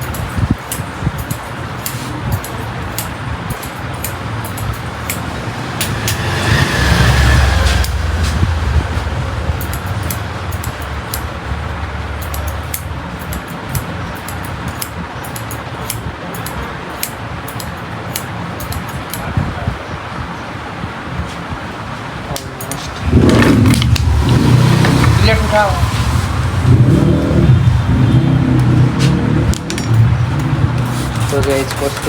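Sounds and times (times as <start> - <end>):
road traffic hum: 0.0 - 32.0
scissors snipping: 0.1 - 6.5.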